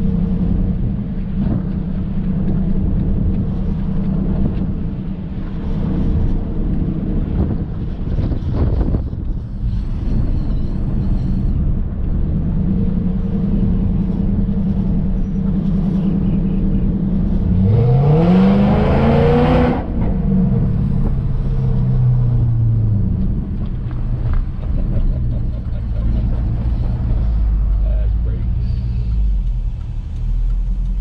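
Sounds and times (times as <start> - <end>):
car engine accelerating: 0.0 - 31.0.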